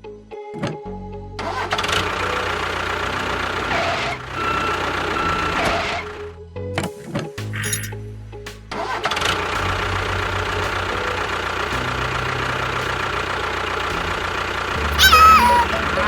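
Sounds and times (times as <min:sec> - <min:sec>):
engine idling: 0:01.4 - 0:06.2, 0:08.7 - 0:15.0
falling pitched call: 0:14.8 - 0:16.0.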